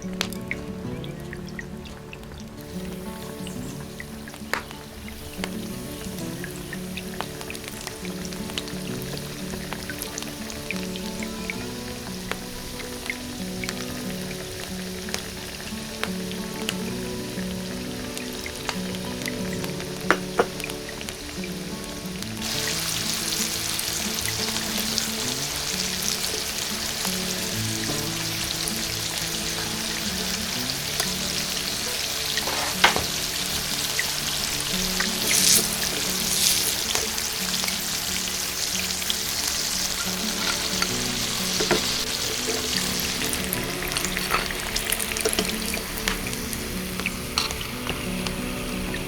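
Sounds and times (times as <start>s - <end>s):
hot oil sizzling: 0.0s - 49.0s
oil crackling and spitting: 0.0s - 49.0s
soft background music: 0.0s - 49.0s.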